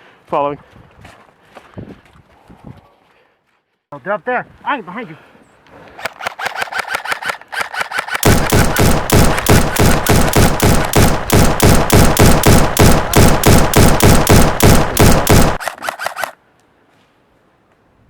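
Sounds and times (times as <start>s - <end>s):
rapid airsoft gunfire: 6.0s - 16.4s.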